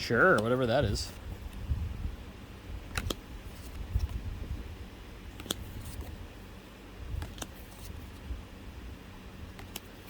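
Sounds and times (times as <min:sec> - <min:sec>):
trading cards snapping: 0:02.9 - 0:04.1, 0:05.4 - 0:06.1, 0:07.2 - 0:07.9, 0:09.5 - 0:10.0
cards rustling and bumping: 0:02.9 - 0:04.2, 0:05.3 - 0:06.2, 0:07.1 - 0:08.3, 0:09.5 - 0:10.0.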